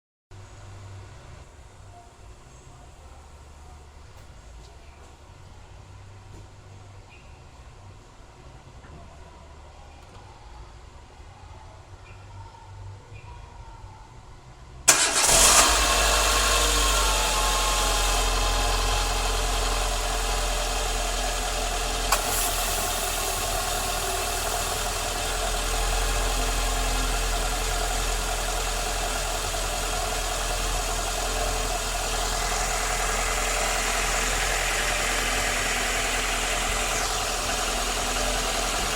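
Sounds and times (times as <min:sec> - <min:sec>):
car engine and air conditioning running: 0:14.8 - 0:38.9.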